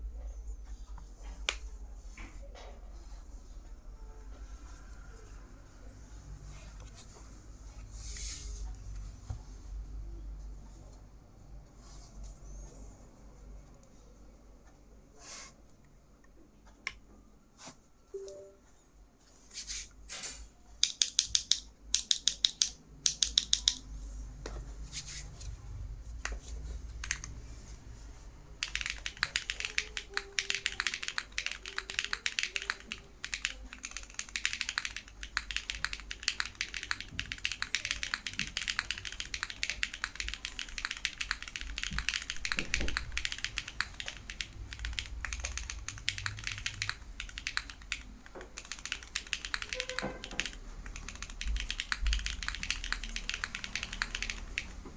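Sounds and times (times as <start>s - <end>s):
mechanical keyboard typing: 20.8s - 24.0s, 26.2s - 27.4s, 28.6s - 54.9s.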